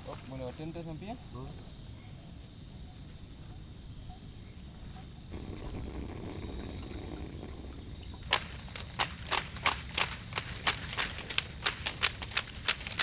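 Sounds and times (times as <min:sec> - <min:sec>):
night insects chirring: 0:00.0 - 0:13.0
wind rumbling on microphone: 0:05.2 - 0:13.0.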